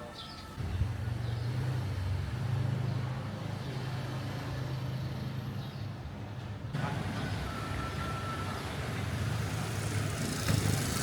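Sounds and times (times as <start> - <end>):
vehicle engine humming: 6.4 - 11.0.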